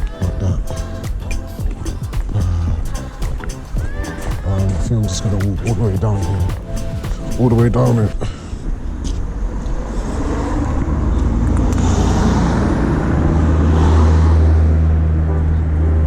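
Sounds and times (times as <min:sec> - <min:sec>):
vehicle passing close by: 0:09.8 - 0:16.0.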